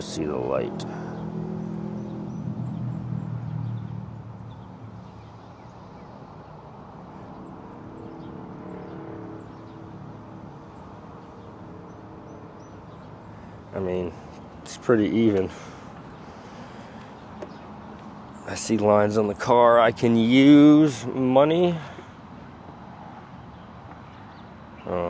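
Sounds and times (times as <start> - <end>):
vehicle engine humming: 0.0 - 25.0.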